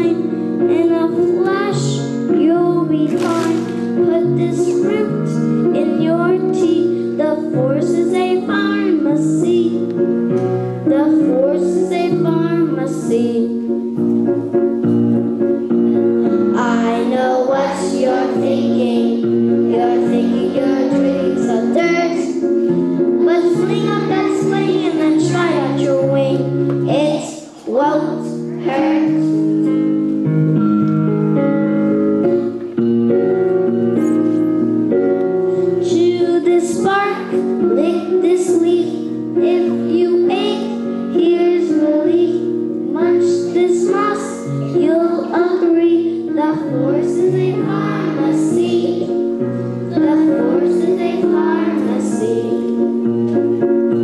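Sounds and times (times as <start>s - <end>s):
instrumental accompaniment: 0.0s - 54.0s
children singing: 16.6s - 22.4s, 23.2s - 25.9s, 26.9s - 29.5s, 46.5s - 49.3s, 49.9s - 52.8s.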